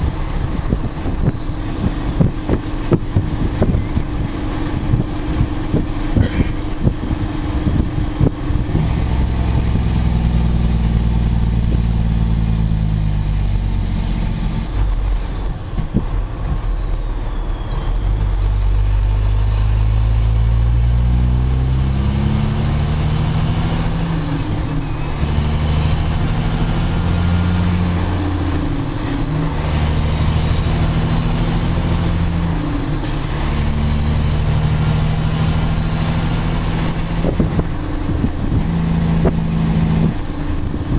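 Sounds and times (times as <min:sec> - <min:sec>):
diesel truck engine: 0:00.0 - 0:40.9.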